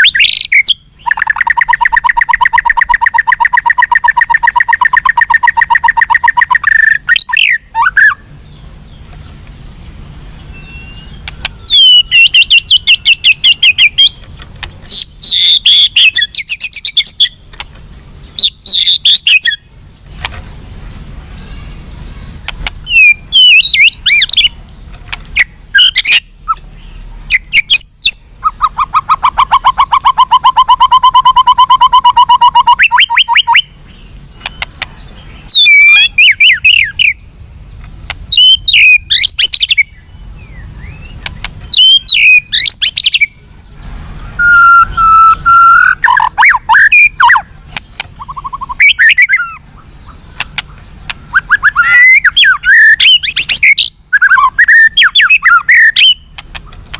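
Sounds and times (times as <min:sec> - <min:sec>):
bird repeating lower notes: 0:00.0 - 0:08.6, 0:10.3 - 0:17.6, 0:18.2 - 0:19.7, 0:20.9 - 0:24.6, 0:25.4 - 0:37.3, 0:38.3 - 0:43.4, 0:44.1 - 0:56.8
bird singing whistled phrases: 0:00.0 - 0:08.6, 0:10.4 - 0:14.2, 0:14.9 - 0:17.4, 0:18.3 - 0:19.7, 0:21.4 - 0:24.6, 0:25.4 - 0:33.8, 0:35.2 - 0:37.2, 0:38.3 - 0:43.4, 0:44.1 - 0:47.5, 0:48.2 - 0:50.2, 0:51.2 - 0:56.3.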